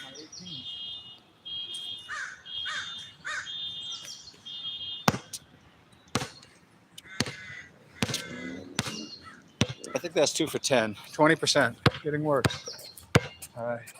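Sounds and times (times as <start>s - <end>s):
bird calling in harsh notes: 0.0s - 5.3s, 6.2s - 10.2s
basketball bouncing on court: 5.1s - 5.4s, 6.1s - 6.4s, 7.1s - 9.9s, 11.8s - 13.5s.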